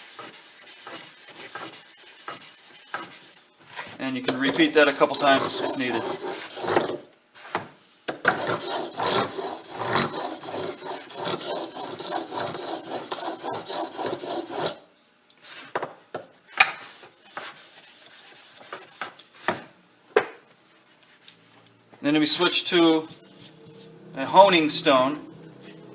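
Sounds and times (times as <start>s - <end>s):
chisel scraping on whetstone: 0.0s - 3.4s, 4.4s - 7.0s, 8.2s - 14.8s.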